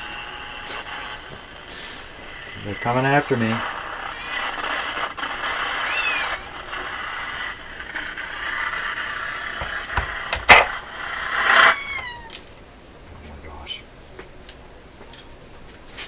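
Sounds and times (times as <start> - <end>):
radio static hiss: 0.0 - 15.0
cat crying: 4.1 - 4.6, 5.8 - 6.5, 11.6 - 12.4
sharp knocks: 9.6 - 10.7.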